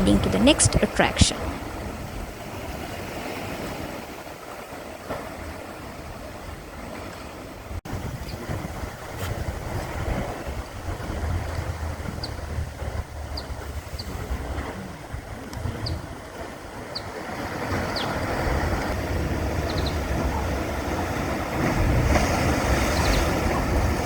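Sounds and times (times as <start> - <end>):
surf washing through rocks: 1.0 - 24.0
wind buffeting microphone: 7.6 - 24.0.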